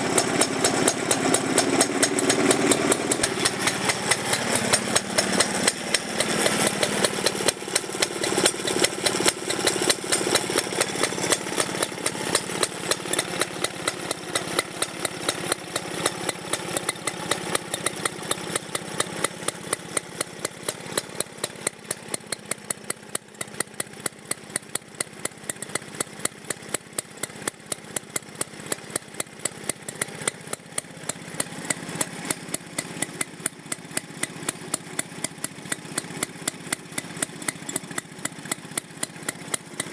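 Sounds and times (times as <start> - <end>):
lawnmower engine running: 0.0 - 39.9.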